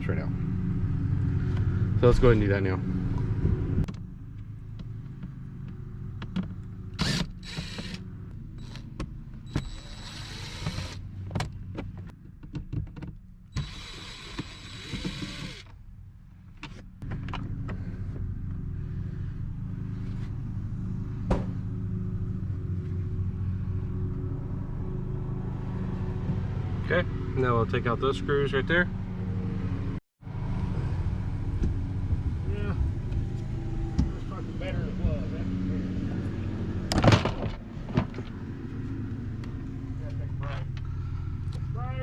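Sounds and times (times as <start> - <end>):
power screwdriver whirring: 7.0 - 8.0, 9.5 - 11.0, 13.5 - 15.7
steady low hum: 13.2 - 42.0.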